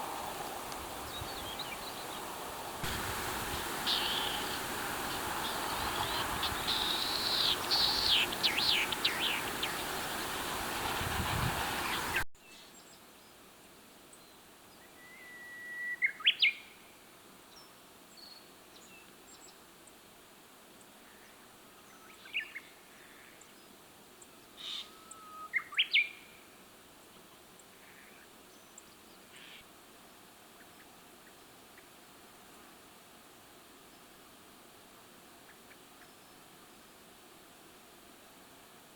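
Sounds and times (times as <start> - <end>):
background hiss: 0.0 - 38.9
wild birds calling: 0.3 - 11.1.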